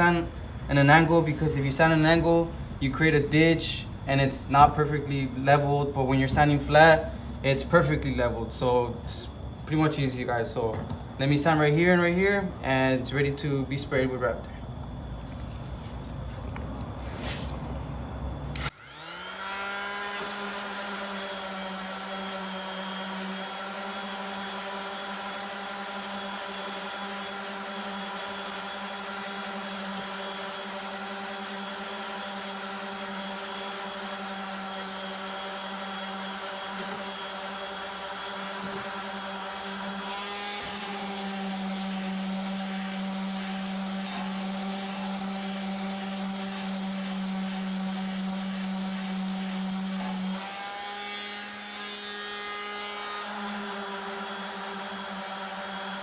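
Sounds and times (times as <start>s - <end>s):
power sander on sheet metal: 18.5s - 56.0s.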